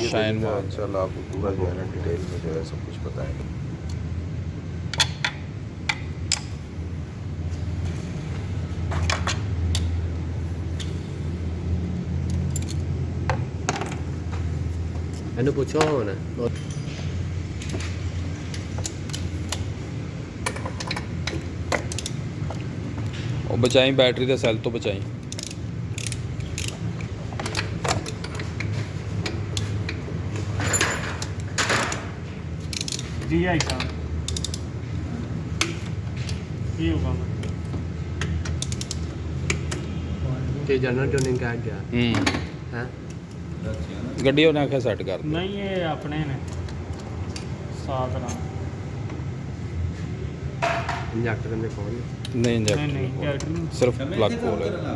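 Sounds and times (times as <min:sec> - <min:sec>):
ratchet clicks: 0:17.6 - 0:19.7, 0:20.4 - 0:22.6, 0:23.6 - 0:30.0, 0:30.7 - 0:34.7, 0:37.4 - 0:39.9.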